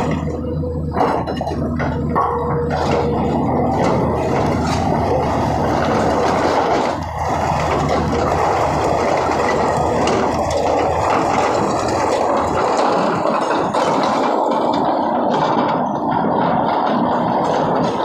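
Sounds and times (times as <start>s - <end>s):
hydraulic breaker hammering rock: 0.0s - 18.0s.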